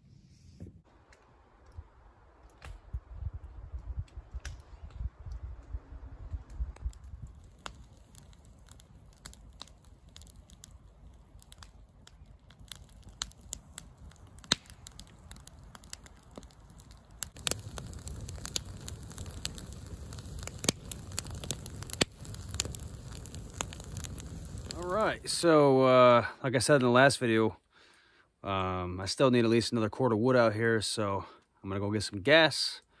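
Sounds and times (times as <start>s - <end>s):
wood fire crackling and popping: 1.0s - 27.2s.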